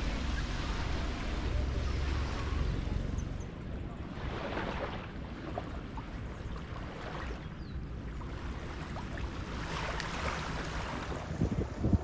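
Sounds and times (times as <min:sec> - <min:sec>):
waves washing on beach: 0:00.0 - 0:03.1, 0:04.0 - 0:12.0
wind buffeting microphone: 0:07.6 - 0:12.0.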